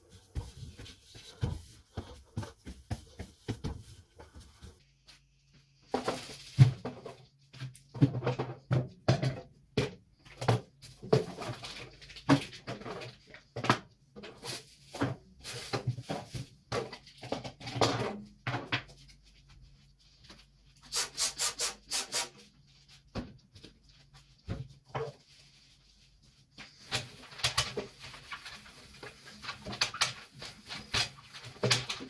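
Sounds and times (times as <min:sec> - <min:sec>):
food containers knocking and scraping: 0:00.0 - 0:04.9, 0:05.7 - 0:19.6.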